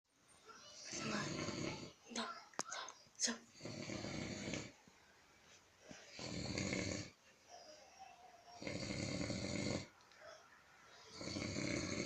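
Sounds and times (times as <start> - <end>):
quiet breathing: 2.7 - 8.1
man snoring: 3.6 - 4.7, 6.1 - 7.2, 8.6 - 9.9, 11.2 - 12.0.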